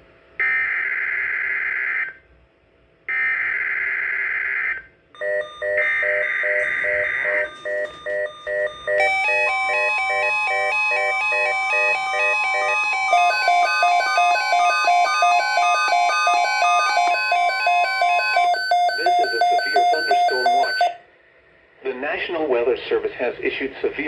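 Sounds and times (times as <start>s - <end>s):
electronic alarm beeps: 5.2s - 21.0s
stepping beep tones: 5.2s - 21.0s.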